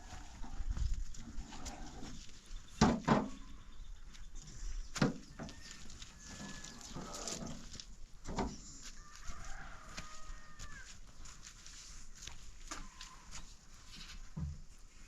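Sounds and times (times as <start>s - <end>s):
rooster crowing: 5.5s - 7.2s, 8.8s - 11.0s.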